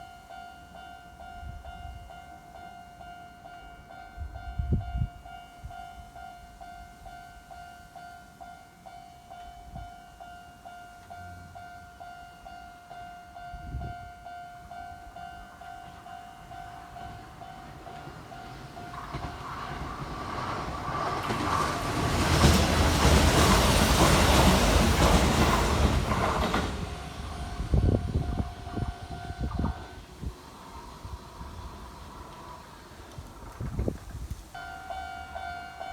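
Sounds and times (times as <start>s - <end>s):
electric train running: 15.8s - 35.4s.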